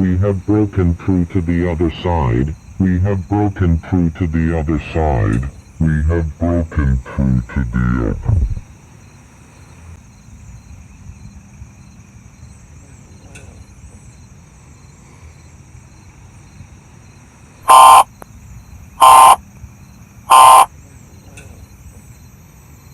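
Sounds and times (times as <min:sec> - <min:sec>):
digital data tone bursts: 0:17.7 - 0:18.1, 0:19.0 - 0:19.4, 0:20.3 - 0:20.7.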